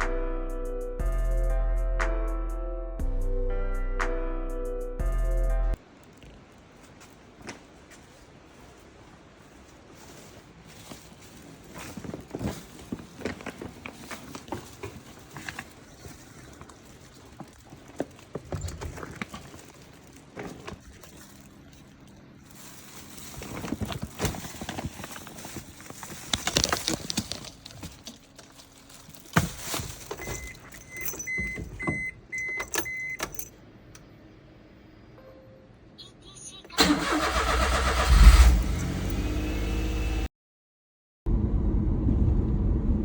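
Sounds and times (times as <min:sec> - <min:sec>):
keys jingling: 0:23.0 - 0:33.6.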